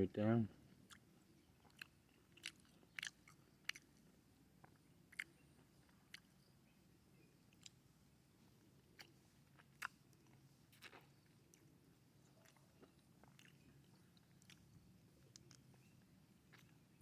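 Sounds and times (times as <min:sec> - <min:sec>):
low room hum: 0:00.0 - 0:17.0
person chewing wet clicks: 0:00.7 - 0:06.5, 0:07.5 - 0:07.8, 0:08.9 - 0:17.0.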